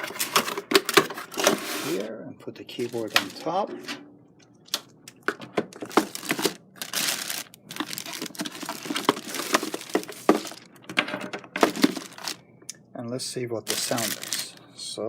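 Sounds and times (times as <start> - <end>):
packaging crinkling: 2.7 - 3.6, 4.6 - 12.4, 13.6 - 14.6.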